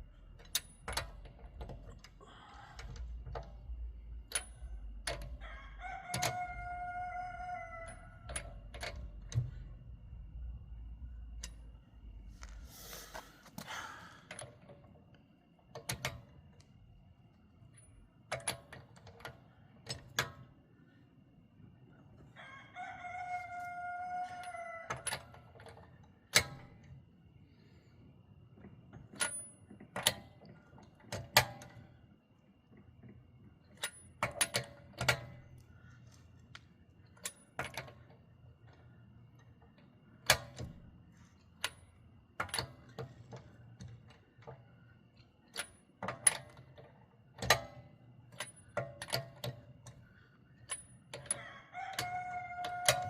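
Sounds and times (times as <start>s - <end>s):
rooster crowing: 5.4s - 8.6s, 22.3s - 25.3s, 51.2s - 53.0s.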